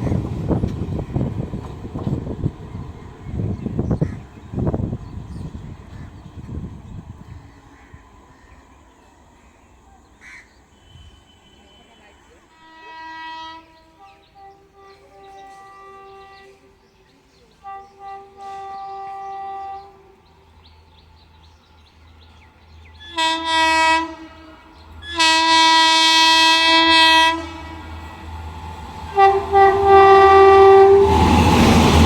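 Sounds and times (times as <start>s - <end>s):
train rumble: 0.0s - 32.0s
train horn blasts: 10.7s - 20.5s, 23.0s - 32.0s.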